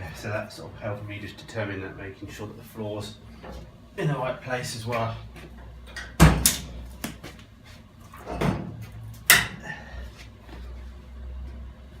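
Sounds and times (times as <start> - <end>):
sharp knocks and clunks of tools: 9.3 - 9.6.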